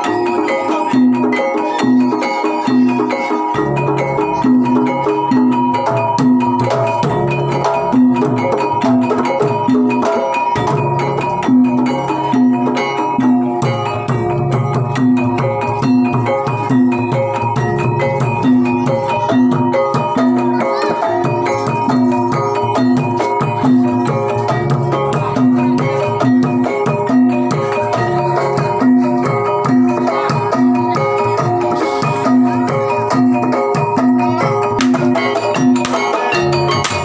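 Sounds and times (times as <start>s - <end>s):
gamelan music: 0.0s - 37.0s.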